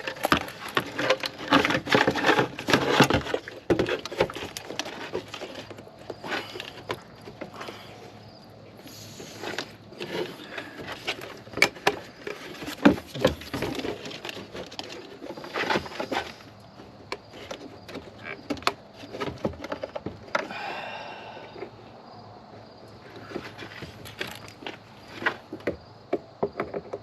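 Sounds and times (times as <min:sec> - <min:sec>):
hands handling plastic parts: 0:00.0 - 0:08.2, 0:23.2 - 0:25.6.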